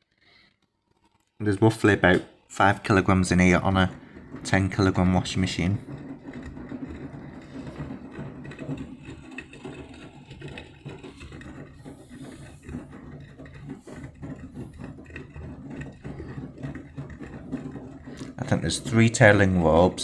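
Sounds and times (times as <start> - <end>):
washing machine motor humming: 1.4 - 20.0.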